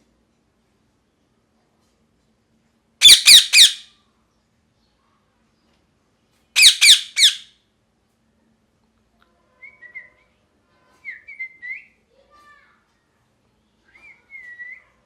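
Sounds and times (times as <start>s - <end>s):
parrot screeching: 3.0s - 3.9s, 6.6s - 7.5s
soft whistled bird notes: 13.9s - 15.0s.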